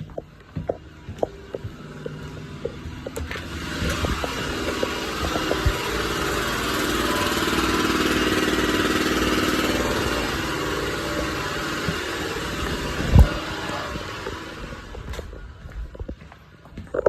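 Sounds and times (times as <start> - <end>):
motor running: 0.0 - 16.2.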